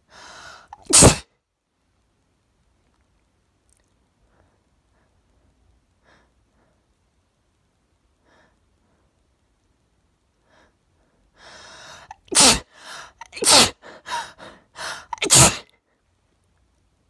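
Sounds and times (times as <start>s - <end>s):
woman sneezing: 0.7s - 1.3s, 12.1s - 13.8s, 15.1s - 15.7s.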